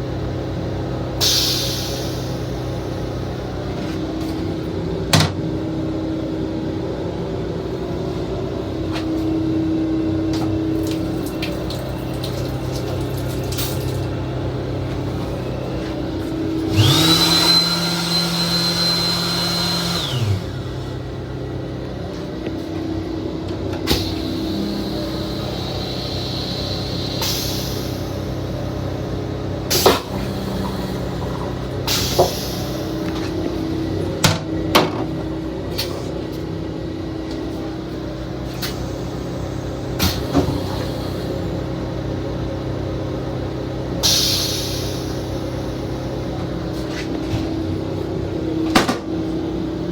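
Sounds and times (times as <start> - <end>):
railcar equipment hum: 0.0 - 49.9
motor whirring to a high whine: 14.1 - 22.5.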